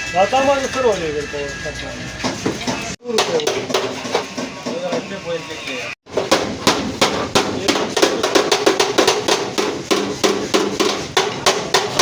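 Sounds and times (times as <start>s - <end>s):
hammer blows on sheet metal: 6.1s - 12.0s.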